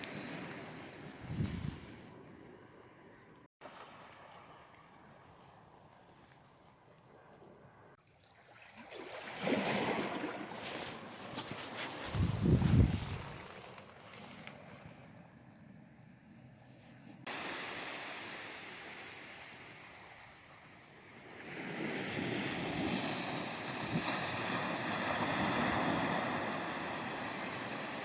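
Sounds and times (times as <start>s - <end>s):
wind: 0.0s - 28.0s
ocean waves washing onto beach: 17.3s - 28.0s.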